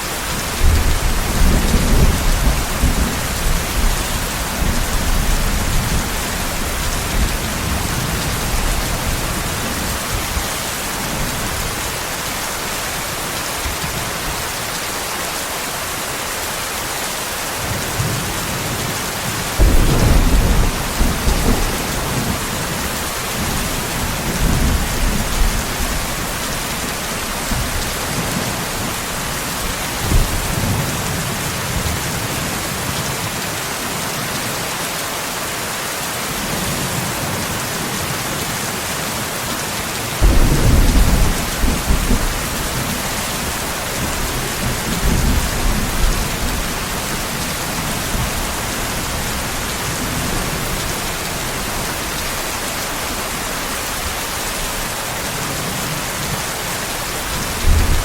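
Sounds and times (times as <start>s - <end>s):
heavy rain hissing: 0.0s - 58.0s
thunder rumbling: 19.2s - 31.2s, 40.2s - 52.3s.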